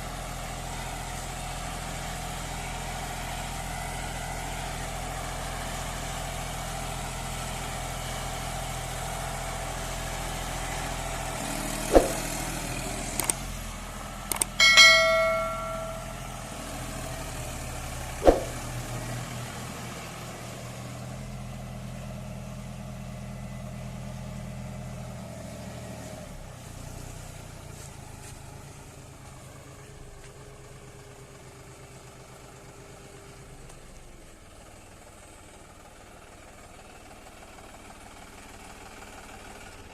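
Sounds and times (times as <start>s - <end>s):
tractor diesel engine idling: 0.0s - 39.9s
sharp knocks: 11.9s - 12.3s, 14.3s - 16.2s, 18.2s - 18.6s
ringing metal clang: 14.3s - 16.2s, 18.2s - 18.6s.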